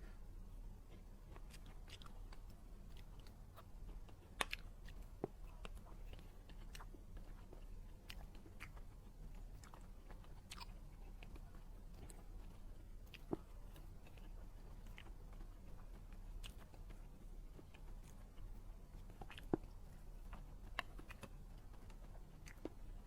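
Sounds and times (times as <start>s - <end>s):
faint low hum: 0.0s - 23.0s
soft chewing: 0.0s - 23.0s.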